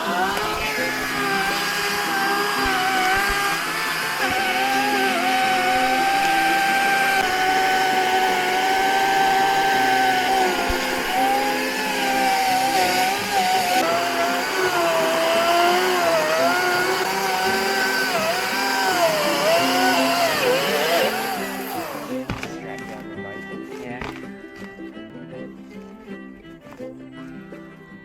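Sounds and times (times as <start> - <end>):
chainsaw cutting wood: 0.0 - 25.0.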